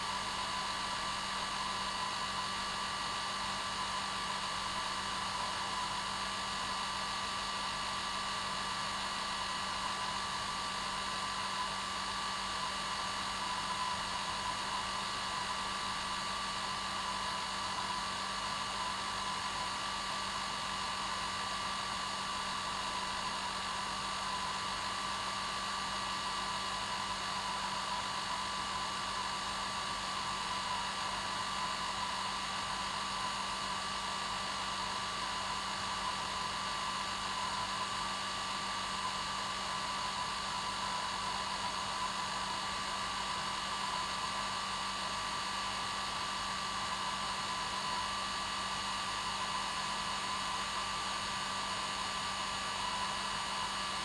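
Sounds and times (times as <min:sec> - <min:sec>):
hair dryer running: 0:26.0 - 0:54.0.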